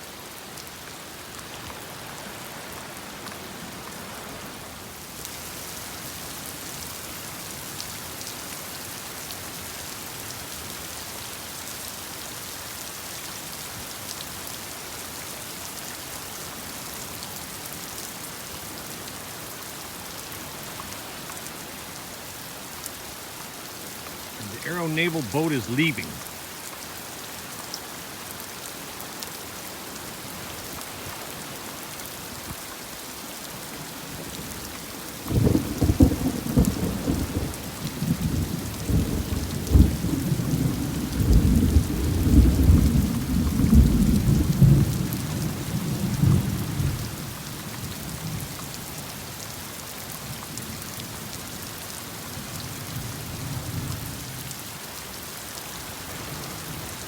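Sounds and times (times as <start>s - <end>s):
heavy rain falling: 0.0s - 57.0s
thunder crackling and rumbling: 35.3s - 45.0s.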